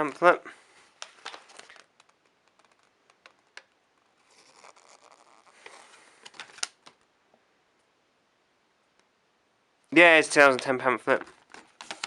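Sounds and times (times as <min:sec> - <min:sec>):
paper pamphlet rustling and crinkling: 0:00.0 - 0:07.0, 0:10.4 - 0:12.0.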